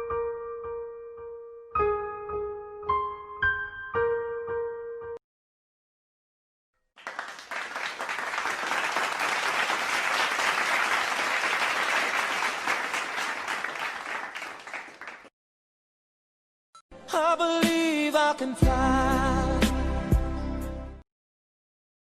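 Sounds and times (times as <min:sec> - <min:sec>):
crowd applause: 0:07.0 - 0:15.3.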